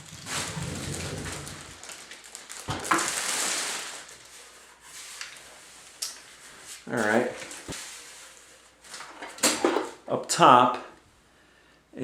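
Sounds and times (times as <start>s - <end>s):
plastic wrapping crinkling: 0.0s - 4.6s.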